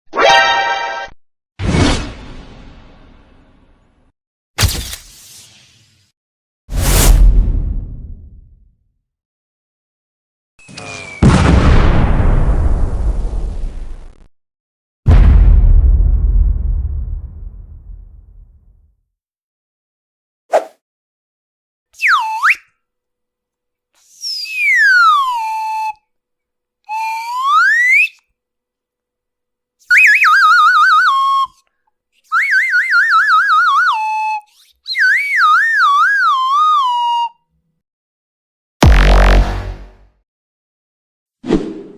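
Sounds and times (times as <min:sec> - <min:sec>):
cartoon whistle sound effects: 0:22.0 - 0:22.7, 0:24.5 - 0:26.0, 0:26.9 - 0:28.1, 0:32.3 - 0:37.3.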